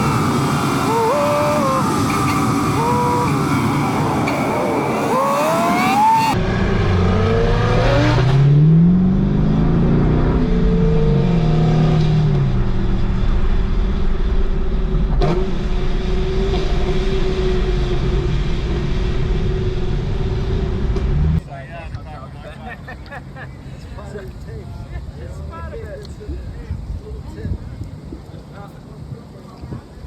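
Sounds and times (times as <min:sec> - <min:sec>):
car engine revving: 0:00.0 - 0:21.4.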